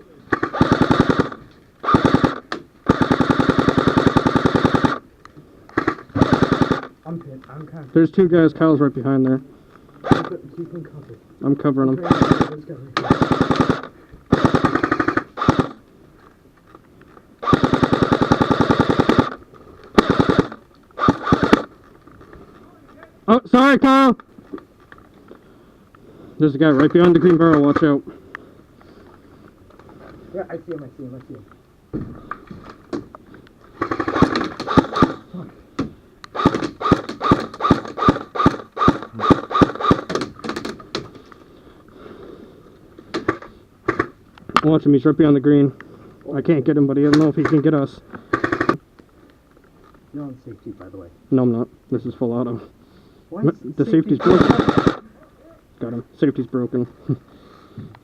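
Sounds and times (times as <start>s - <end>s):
airsoft rifle firing full auto: 0.3s - 5.0s, 5.7s - 6.9s, 12.0s - 15.8s, 17.4s - 21.7s, 33.8s - 35.2s, 36.3s - 40.6s, 48.3s - 48.8s, 54.2s - 55.0s.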